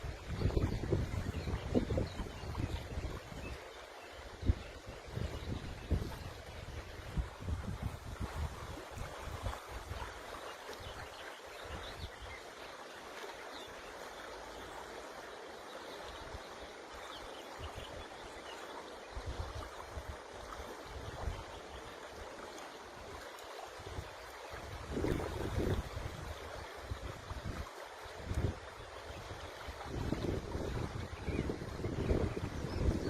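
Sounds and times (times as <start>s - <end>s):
wind rumble on microphone: 0.0s - 3.6s, 4.3s - 10.2s, 23.8s - 33.0s
river flowing: 0.0s - 33.0s.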